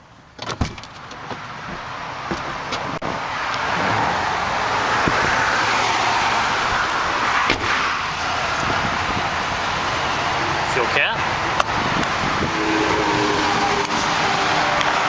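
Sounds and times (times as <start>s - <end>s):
highway traffic: 0.0s - 15.0s
wind: 0.0s - 15.0s.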